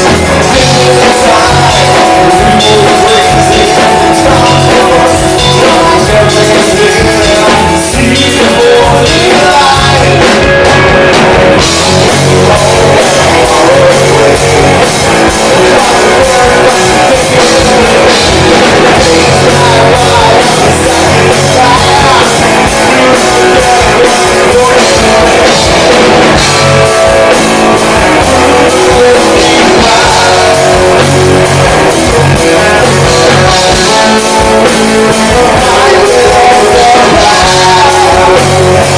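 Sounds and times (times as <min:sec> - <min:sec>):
live rock band playing: 0:00.0 - 0:38.9.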